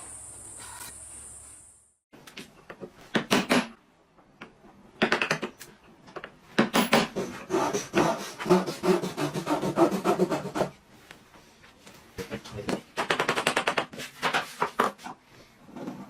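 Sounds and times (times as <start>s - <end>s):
hand tool rasping wood: 7.1s - 10.7s.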